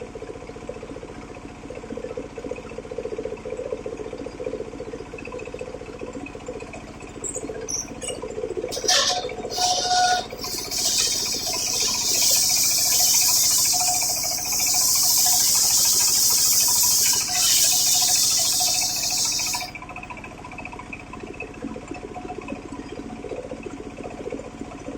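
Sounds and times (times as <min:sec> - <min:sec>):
circular saw cutting wood: 0:08.7 - 0:19.7.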